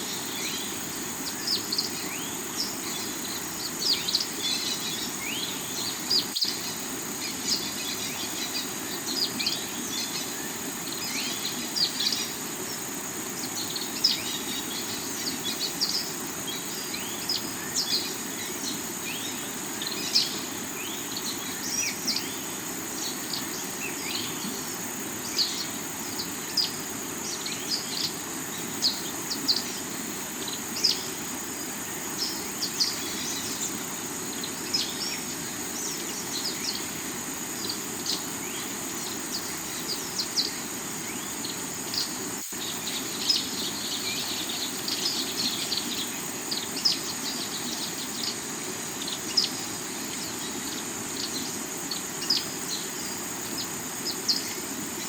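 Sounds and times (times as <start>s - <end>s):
high insect drone: 0.0s - 55.0s
river water running: 0.0s - 55.0s.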